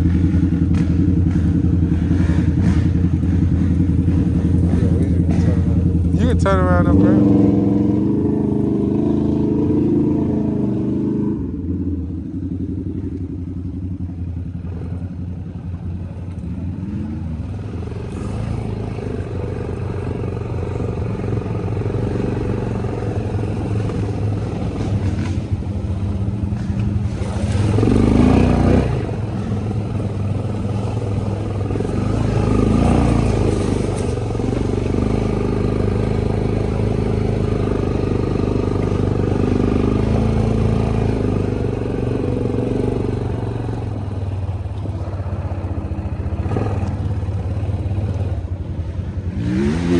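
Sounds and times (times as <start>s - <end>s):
atv engine revving: 0.0s - 49.9s.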